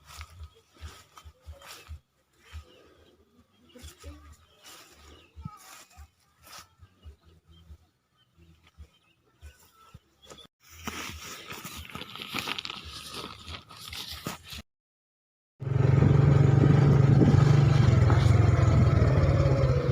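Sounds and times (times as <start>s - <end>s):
rustling handling noise: 10.3s - 14.6s
small engine running: 15.6s - 19.9s.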